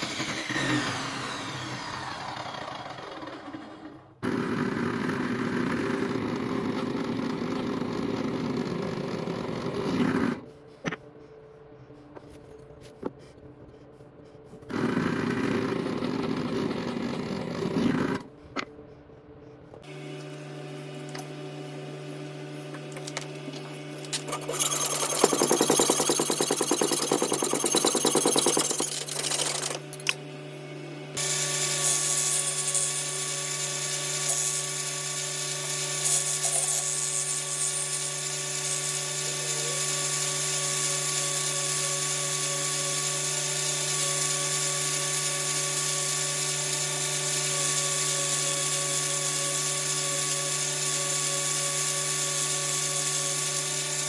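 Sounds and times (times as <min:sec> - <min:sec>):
electric power tool motor running: 0:00.0 - 0:10.4, 0:24.1 - 0:54.0.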